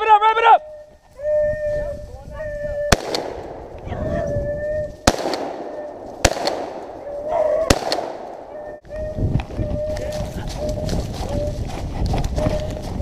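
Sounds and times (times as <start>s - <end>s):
dogs baying and howling: 0.6s - 2.9s, 7.0s - 7.8s, 8.4s - 11.6s
sharp cracks: 2.9s - 3.9s, 5.0s - 8.5s.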